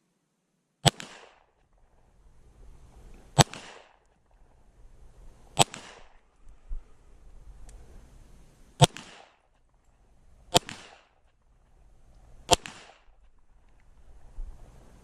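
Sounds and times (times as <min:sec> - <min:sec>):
pistol shots with echo: 0:00.8 - 0:01.5, 0:03.4 - 0:04.0, 0:05.6 - 0:06.2, 0:08.8 - 0:09.4, 0:10.5 - 0:11.2, 0:12.5 - 0:13.1.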